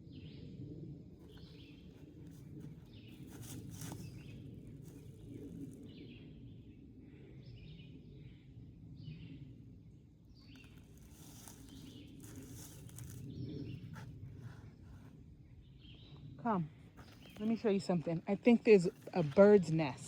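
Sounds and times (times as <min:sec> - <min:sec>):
rustling: 0:10.6 - 0:13.3.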